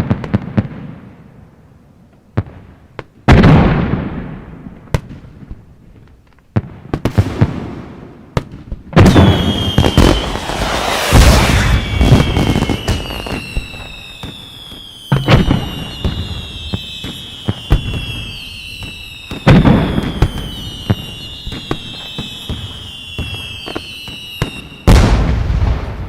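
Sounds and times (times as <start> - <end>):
firework bangs: 6.5 - 26.0
crackling pops: 8.3 - 15.8
high descending whistle: 9.1 - 24.8.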